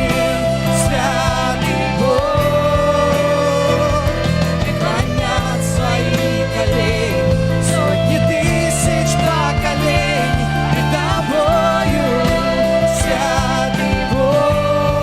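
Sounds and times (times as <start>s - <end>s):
band with steady bass: 0.0s - 15.0s
person singing long notes: 0.0s - 15.0s.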